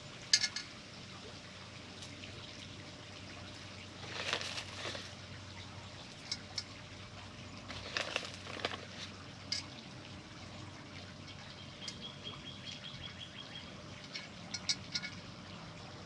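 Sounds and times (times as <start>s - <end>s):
small stones clicking: 4.0s - 5.1s, 7.7s - 9.0s.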